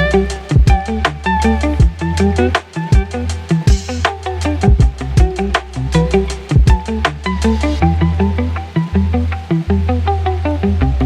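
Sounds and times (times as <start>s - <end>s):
bass line: 0.0s - 11.0s
drum hits: 0.5s - 1.2s, 3.7s - 5.8s, 6.5s - 7.3s.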